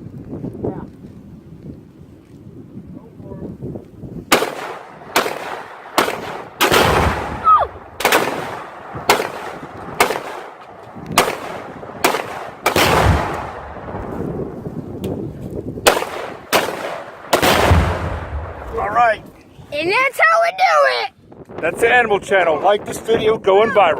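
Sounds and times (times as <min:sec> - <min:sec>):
explosion booms with rumble: 0:04.3 - 0:10.4, 0:11.1 - 0:14.6, 0:15.8 - 0:19.2
rifle shots: 0:04.3 - 0:14.3, 0:15.8 - 0:19.2.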